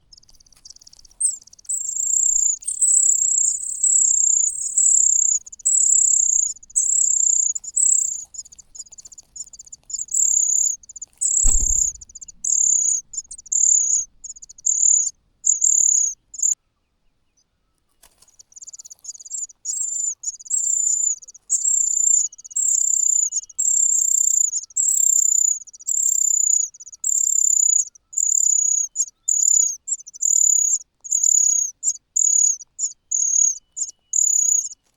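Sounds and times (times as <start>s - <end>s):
chick high chittering calls: 0.1s - 16.6s, 18.6s - 34.8s
low thump: 11.4s - 12.5s.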